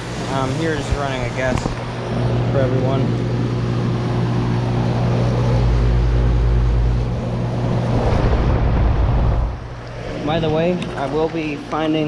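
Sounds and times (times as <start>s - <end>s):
compressor hum: 0.0s - 12.0s
condenser fan rushing: 0.0s - 12.0s
deep rumble: 3.4s - 11.0s.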